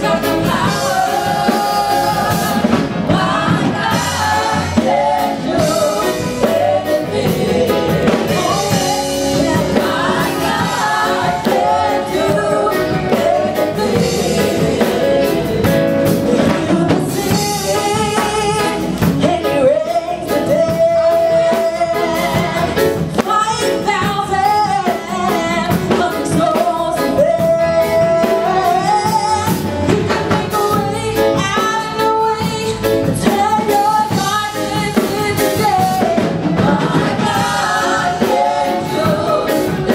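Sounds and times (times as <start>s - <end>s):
singers holding long notes: 0.0s - 18.8s, 35.8s - 39.9s
drum kit: 0.0s - 39.9s
gospel band playing: 0.0s - 39.9s.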